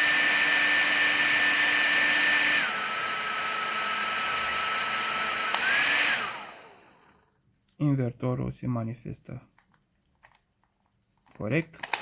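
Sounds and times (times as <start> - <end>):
electric blower motor whining: 0.0 - 7.2.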